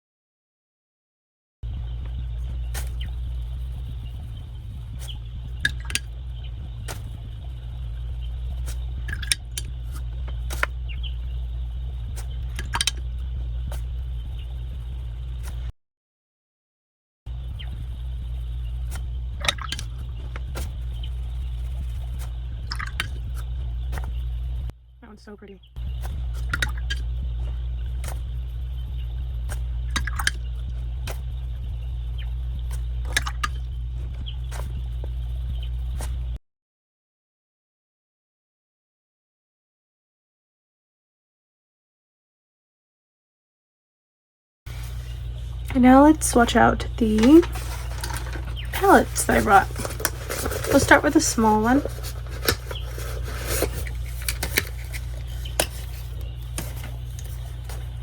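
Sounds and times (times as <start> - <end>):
steady low hum: 1.6 - 15.7, 17.3 - 36.4, 44.7 - 58.0
art supplies clicking on table: 47.2 - 57.8.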